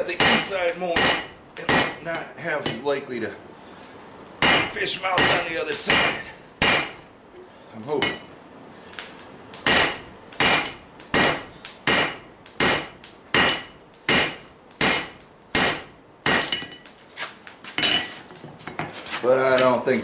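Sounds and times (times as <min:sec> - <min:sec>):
hammer striking steel on anvil: 0:00.2 - 0:02.0, 0:04.4 - 0:07.0, 0:08.0 - 0:08.3, 0:09.6 - 0:16.9.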